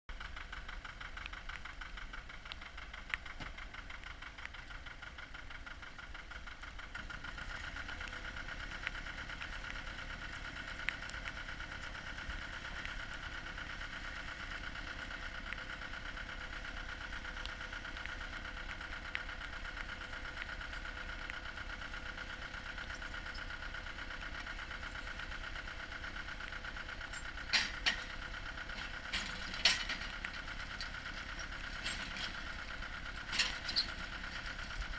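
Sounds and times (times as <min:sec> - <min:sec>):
drilling rig engine running: 0:00.1 - 0:34.9
faint clicks: 0:00.2 - 0:34.9.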